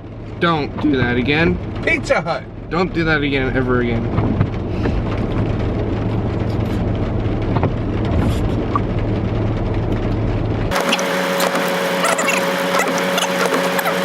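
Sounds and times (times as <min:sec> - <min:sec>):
car engine humming: 0:00.0 - 0:14.0
heavy rain on car roof: 0:03.3 - 0:14.0.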